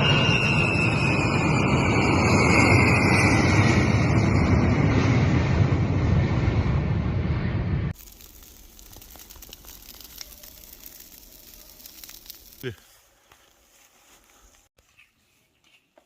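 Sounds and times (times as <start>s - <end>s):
plane passing with roar and whine: 0.0s - 9.7s.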